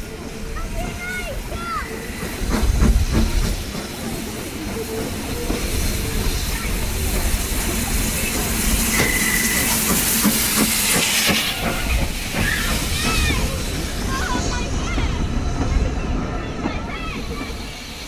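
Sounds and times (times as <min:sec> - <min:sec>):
steam hissing: 0:00.0 - 0:18.0
train rumbling with clicks: 0:00.0 - 0:18.0.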